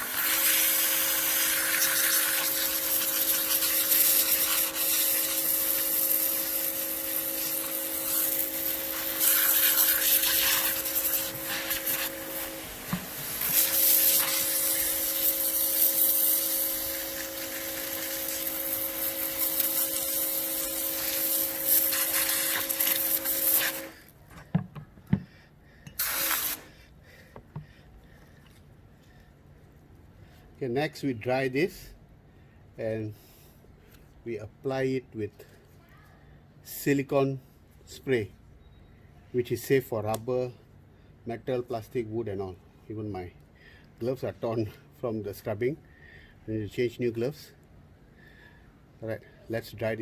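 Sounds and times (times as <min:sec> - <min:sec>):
pressure washer motor hum: 0:00.0 - 0:24.0
water spray hissing: 0:00.0 - 0:24.0, 0:25.9 - 0:26.8.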